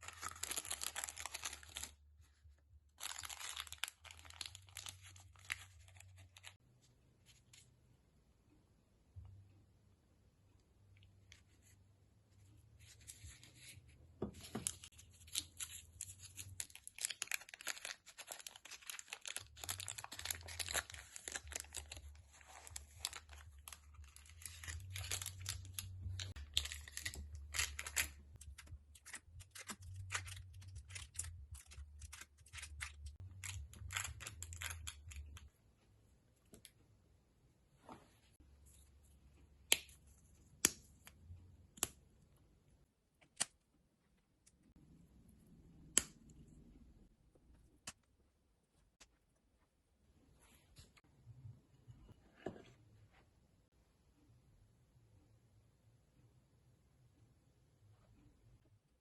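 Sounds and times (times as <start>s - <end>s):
packaging rustling: 0.0s - 1.9s, 3.0s - 6.5s, 14.5s - 35.4s.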